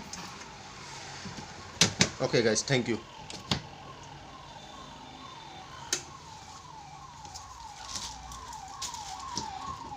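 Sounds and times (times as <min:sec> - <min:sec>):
siren in falling sweeps: 0:02.8 - 0:09.9.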